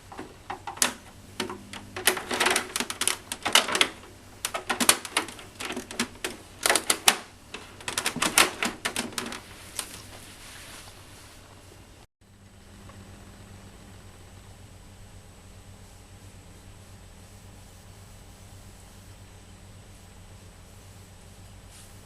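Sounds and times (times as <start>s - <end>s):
mechanical clicks and clatters: 0.0s - 10.0s.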